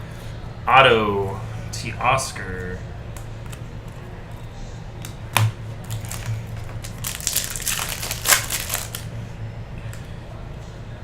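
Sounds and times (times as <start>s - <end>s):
foil wrapper snap: 5.0s - 9.1s
foil wrapper tearing and crinkling: 5.8s - 9.1s.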